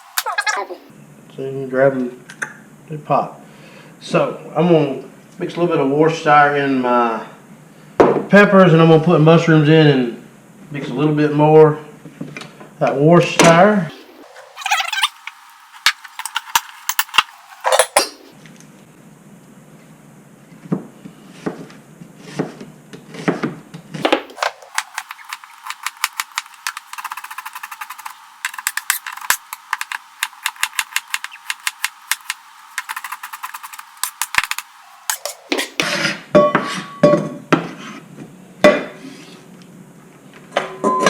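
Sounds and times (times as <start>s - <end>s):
fast clicks: 13.9s - 18.3s, 24.0s - 35.8s
utensil scraping a bowl: 24.2s - 35.9s.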